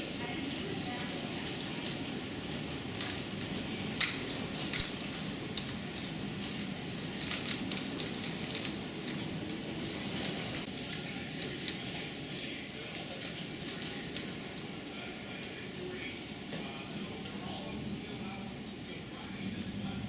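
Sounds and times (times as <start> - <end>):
heavy rain downpour: 0.0 - 20.0
hailstones striking hard surfaces: 0.3 - 15.2.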